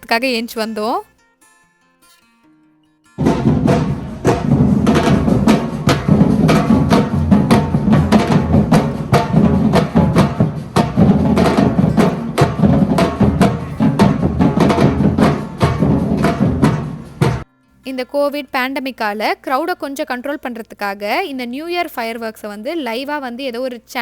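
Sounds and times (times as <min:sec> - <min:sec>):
drums in fast driving rhythm: 0:03.2 - 0:17.4.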